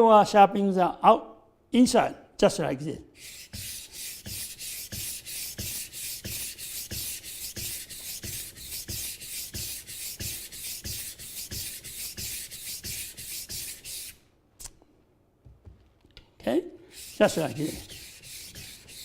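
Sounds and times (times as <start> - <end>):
knife scraping on whetstone: 3.2 - 14.2, 17.0 - 19.0.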